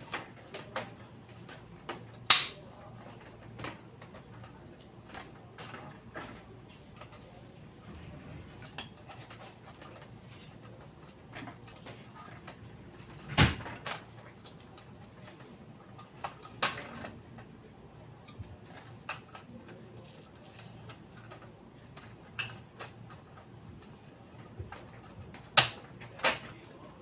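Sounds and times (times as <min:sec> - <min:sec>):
low steady hum: 0:00.0 - 0:27.0
clicks and knocks of hard parts: 0:21.3 - 0:26.7.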